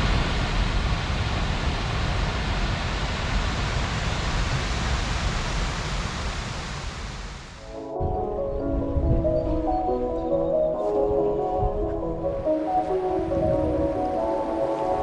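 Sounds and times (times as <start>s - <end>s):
waterfall rushing: 11.0s - 15.0s.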